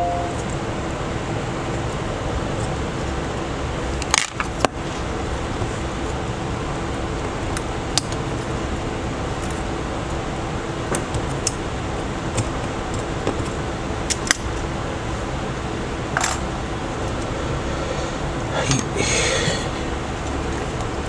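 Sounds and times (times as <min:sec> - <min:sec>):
machine hum: 0:04.8 - 0:21.0.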